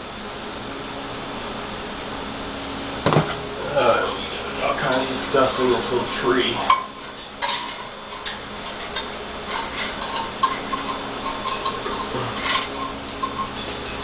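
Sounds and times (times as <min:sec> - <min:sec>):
small metal parts clinking: 0:06.9 - 0:14.0.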